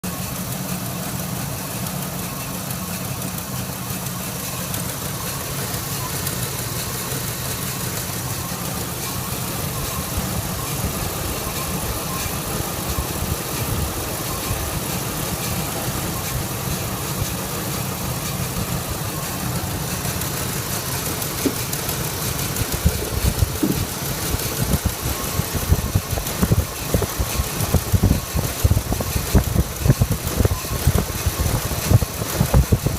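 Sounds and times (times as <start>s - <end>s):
engine idling: 0.0s - 32.9s
engine misfire pops and thumps: 9.8s - 32.9s.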